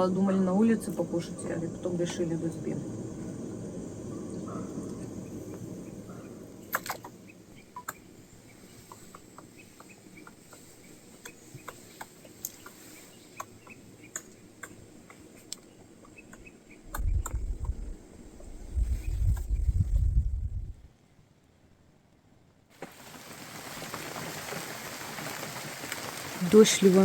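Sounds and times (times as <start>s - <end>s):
low rumble: 0.0s - 7.5s, 16.8s - 21.0s
faint background noise: 0.0s - 27.0s
light ticks and clicks: 11.2s - 12.8s, 13.4s - 15.7s.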